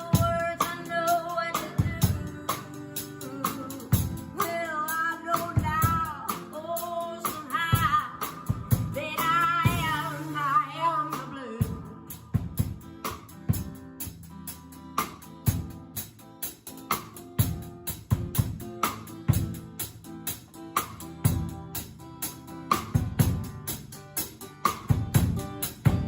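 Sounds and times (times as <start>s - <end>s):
woman singing: 0.0s - 12.6s
guitar and drums playing: 0.0s - 26.0s.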